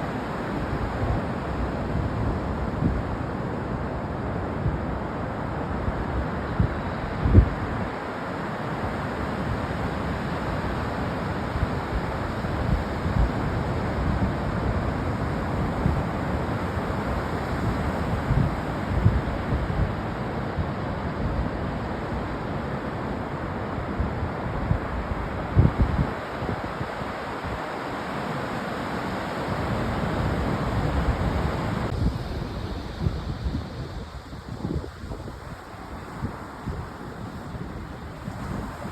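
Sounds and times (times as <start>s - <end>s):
ocean surf washing on beach: 0.0s - 38.9s
wind buffeting microphone: 10.6s - 20.2s, 23.8s - 27.6s, 29.0s - 38.9s.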